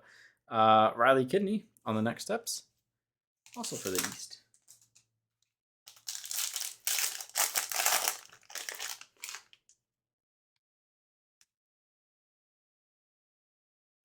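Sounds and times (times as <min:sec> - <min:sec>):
foil wrapper crinkling: 0:03.5 - 0:04.4, 0:05.9 - 0:09.7.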